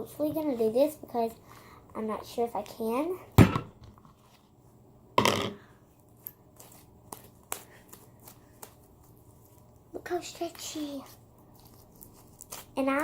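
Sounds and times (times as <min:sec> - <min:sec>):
slime squelching: 0:06.4 - 0:13.0.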